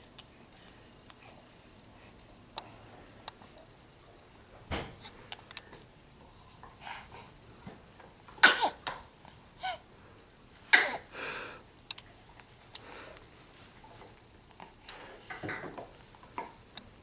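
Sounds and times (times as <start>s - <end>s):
baby sneezing: 8.4s - 8.8s, 10.7s - 11.1s.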